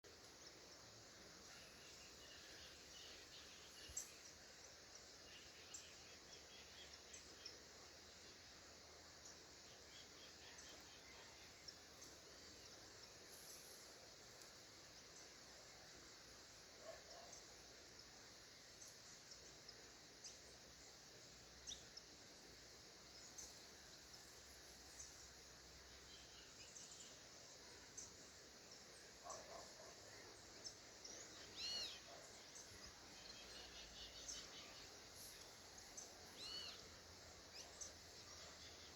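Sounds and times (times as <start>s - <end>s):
faint background noise: 0.0s - 38.9s
steady high hiss: 0.0s - 38.9s
small birds chirping: 8.8s - 38.9s.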